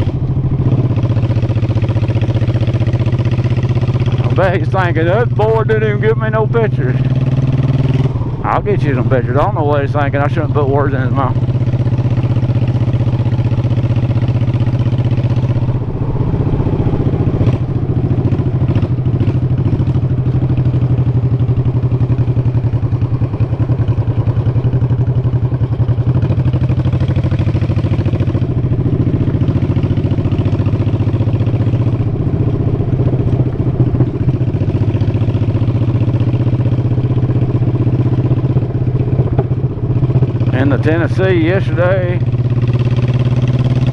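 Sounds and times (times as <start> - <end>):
motorcycle engine running: 0.0 - 43.9
road and wind noise: 0.0 - 43.9.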